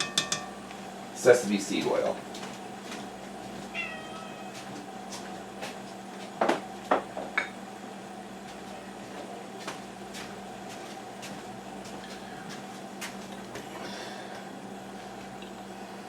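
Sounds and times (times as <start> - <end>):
kitchen items knocking: 0.0 - 0.7
steady hum: 0.0 - 3.7.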